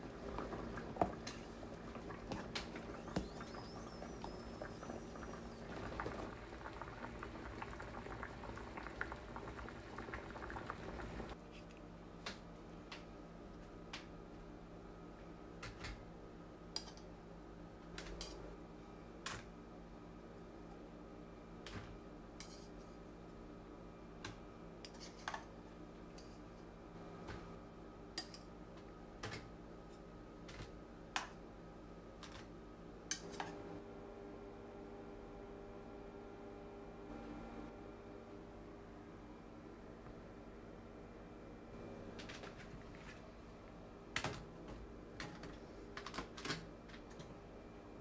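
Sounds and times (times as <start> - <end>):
steady low hum: 0.0 - 12.2.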